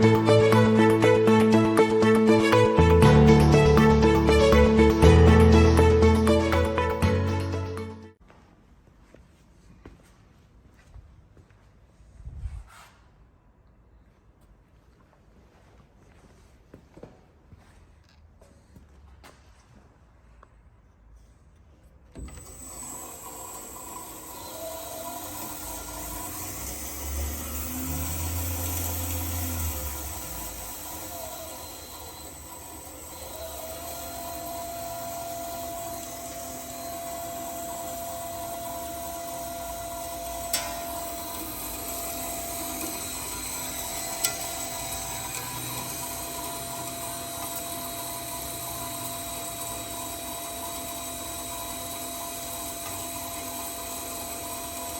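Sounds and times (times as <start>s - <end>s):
band saw running: 0.0s - 8.2s, 22.2s - 54.9s.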